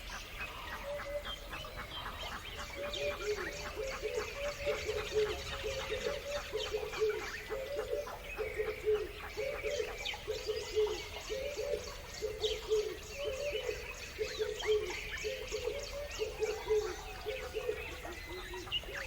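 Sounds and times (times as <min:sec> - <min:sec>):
birds chirping and twittering: 0:00.0 - 0:19.0.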